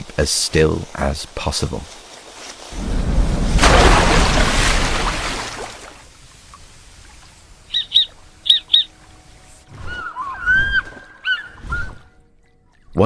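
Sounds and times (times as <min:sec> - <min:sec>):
sharp high bird calls: 0:07.7 - 0:09.0.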